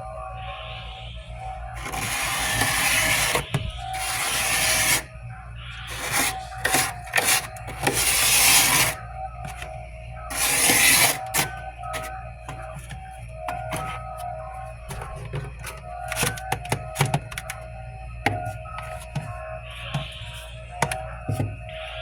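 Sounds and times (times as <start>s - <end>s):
frost scraped off humidifier: 1.8s - 5.1s, 5.9s - 14.3s.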